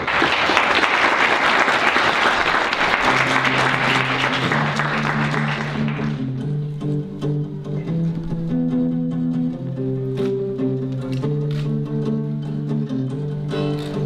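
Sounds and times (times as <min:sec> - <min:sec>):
audience applauding: 0:00.0 - 0:06.3
music with held guitar notes: 0:03.0 - 0:14.0.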